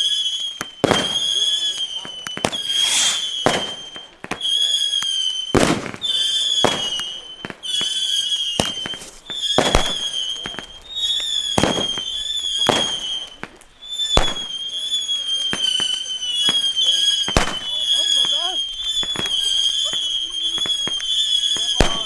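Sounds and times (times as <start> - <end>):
high whistling tone: 0.0 - 22.0
firecrackers banging: 0.5 - 22.0.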